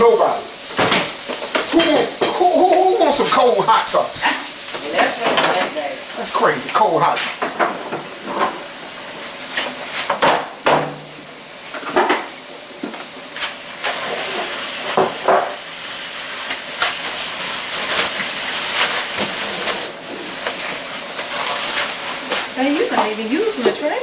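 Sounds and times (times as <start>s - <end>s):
steady hiss: 0.0s - 24.0s
jars and bottles clinking: 0.8s - 4.4s.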